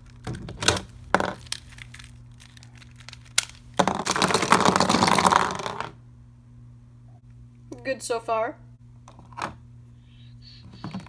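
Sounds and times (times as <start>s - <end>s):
sharp plastic clicks: 0.0s - 3.8s
plastic pieces crackling and rattling: 0.0s - 5.9s.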